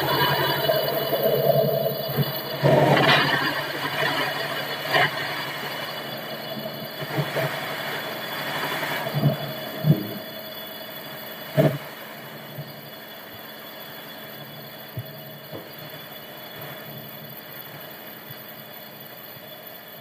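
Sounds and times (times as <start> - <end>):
sawmill machinery humming: 0.0 - 11.5.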